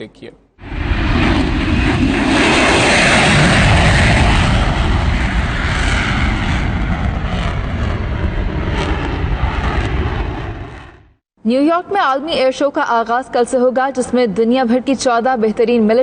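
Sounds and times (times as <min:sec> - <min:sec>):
military jets flying overhead: 0:00.6 - 0:11.2.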